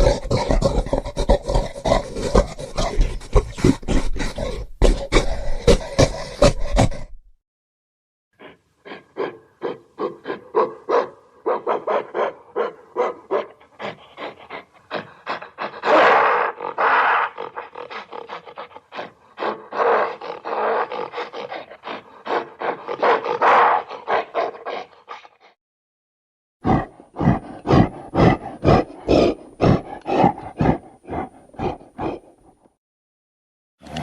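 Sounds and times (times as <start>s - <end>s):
animal roars: 0.0s - 7.2s, 13.8s - 24.9s, 26.6s - 32.4s
hoarse gorilla-like grunts: 0.0s - 7.3s, 13.3s - 25.5s, 26.6s - 32.4s.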